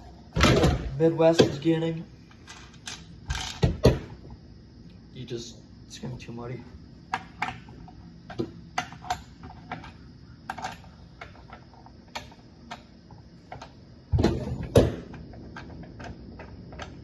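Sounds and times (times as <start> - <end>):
thump and clatter: 0.4 - 1.6, 14.1 - 16.9.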